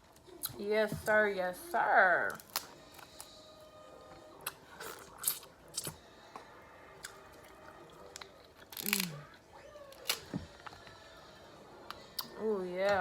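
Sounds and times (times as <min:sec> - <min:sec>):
crab shells cracking: 0:02.3 - 0:03.4, 0:08.0 - 0:11.0.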